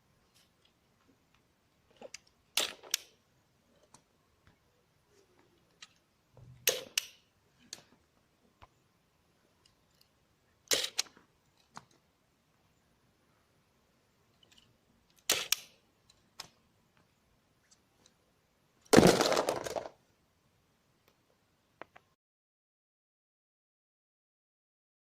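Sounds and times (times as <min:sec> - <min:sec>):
plastic mechanism snapping: 0:15.2 - 0:15.7.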